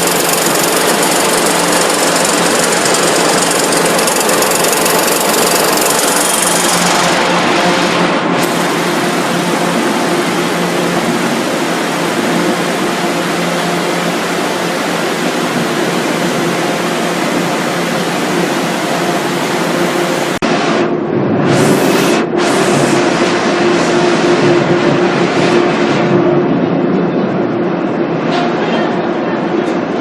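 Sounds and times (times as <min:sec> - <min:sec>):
different machine sound: 0:00.0 - 0:26.7
processing machinery running: 0:00.0 - 0:28.3.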